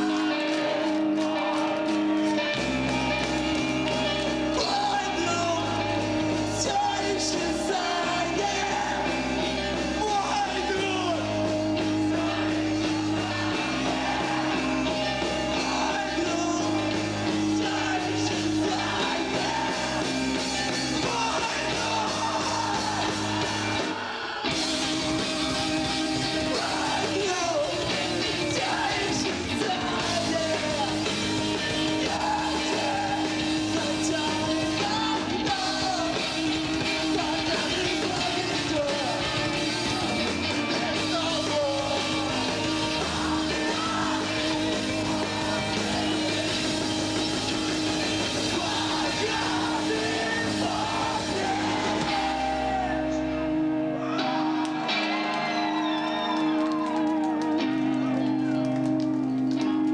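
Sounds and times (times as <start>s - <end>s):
rock band playing live: 0.0s - 59.9s
person singing: 26.4s - 46.9s.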